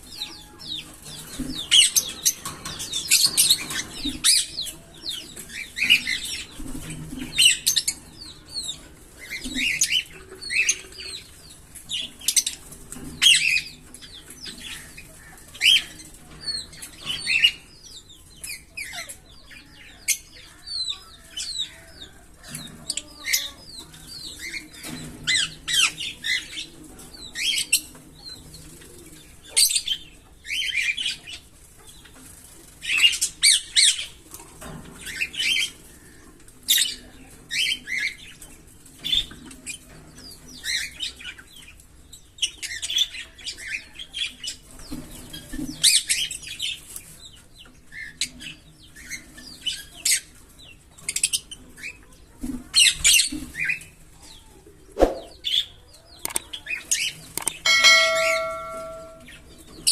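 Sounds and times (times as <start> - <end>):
lovebirds chirping: 0.0 - 32.2, 35.0 - 59.9.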